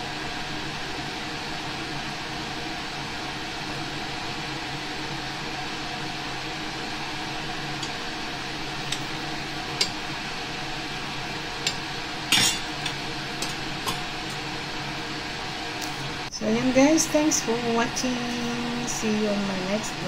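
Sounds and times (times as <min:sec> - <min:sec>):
utensils and dishes clinking: 0:11.6 - 0:14.4.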